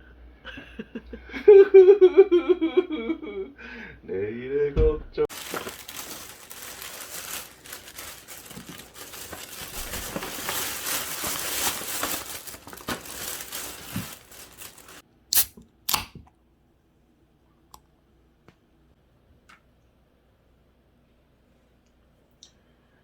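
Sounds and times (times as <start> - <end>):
packaging crinkling and tearing: 5.3 - 15.0.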